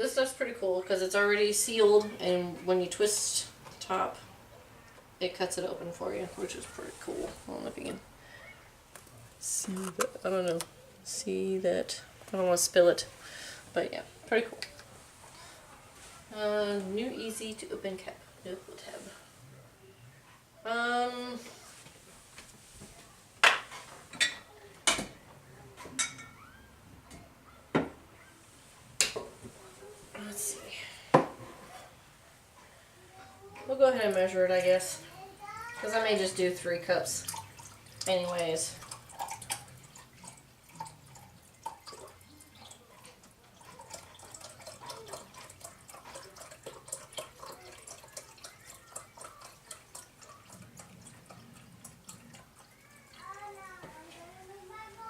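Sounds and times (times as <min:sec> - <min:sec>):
broth pouring into a cup: 0:36.3 - 0:53.2.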